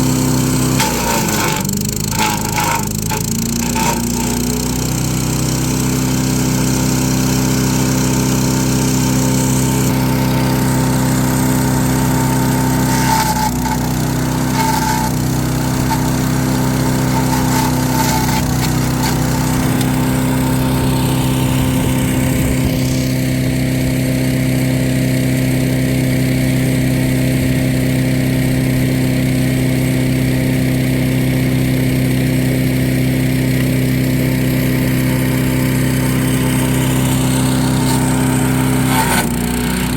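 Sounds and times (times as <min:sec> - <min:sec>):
wood chipper engine running: 0:00.0 - 0:39.9
wood cracking and snapping: 0:00.8 - 0:04.4.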